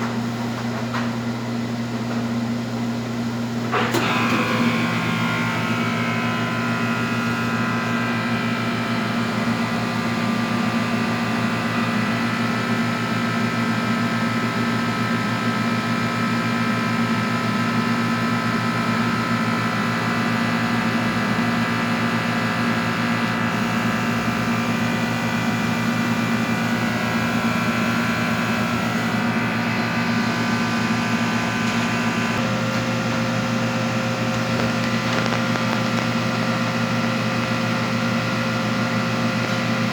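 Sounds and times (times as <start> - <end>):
electrical hum: 2.8 - 12.4, 19.4 - 39.9.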